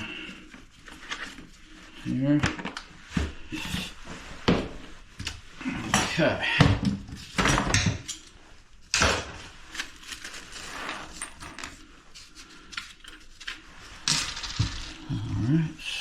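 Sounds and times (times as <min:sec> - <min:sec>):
metal hardware clinking: 0:10.6 - 0:11.8.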